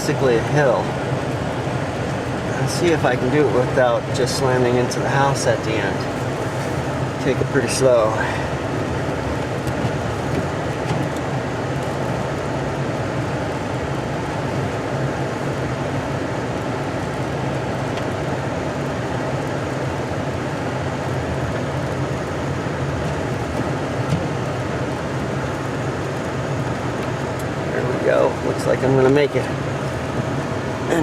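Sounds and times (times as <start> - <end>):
car engine hum: 0.0 - 31.0
road and tyre noise: 0.0 - 31.0.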